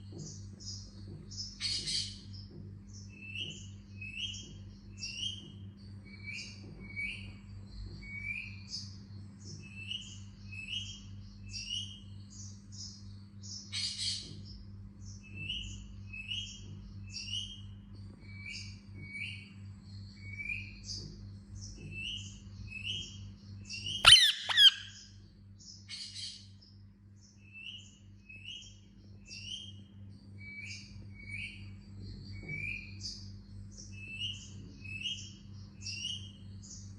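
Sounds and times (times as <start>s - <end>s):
harsh squawk: 24.0s - 25.0s
parakeet chirping: 24.0s - 25.0s.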